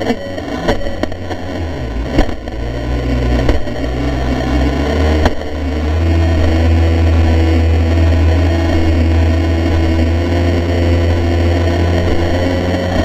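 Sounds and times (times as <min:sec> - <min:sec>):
rumble of water and wind: 0:00.0 - 0:13.0
sharp knocks: 0:02.0 - 0:02.5.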